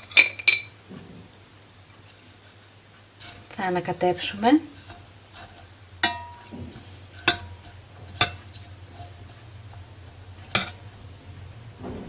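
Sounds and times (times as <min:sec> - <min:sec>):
spoon clinking against saucepan: 0:04.8 - 0:11.0.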